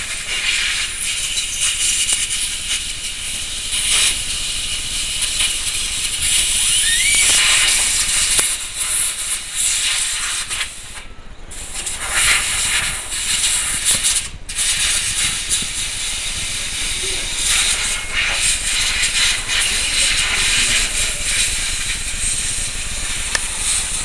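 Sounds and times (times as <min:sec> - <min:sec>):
electric rc car hissing: 0:00.0 - 0:11.0, 0:11.6 - 0:24.0.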